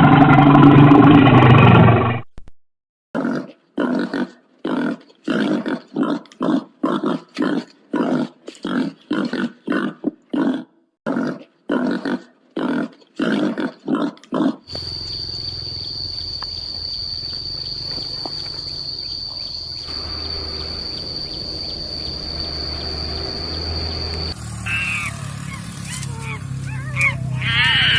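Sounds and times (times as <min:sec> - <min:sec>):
high-pitched insect drone: 0:14.7 - 0:27.9.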